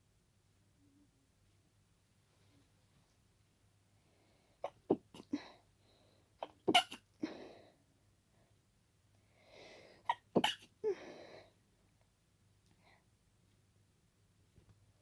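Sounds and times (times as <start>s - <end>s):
person breathing: 4.0s - 4.6s, 5.3s - 6.4s, 9.2s - 10.1s, 10.8s - 11.6s
person sneezing: 6.4s - 7.0s, 10.1s - 10.7s.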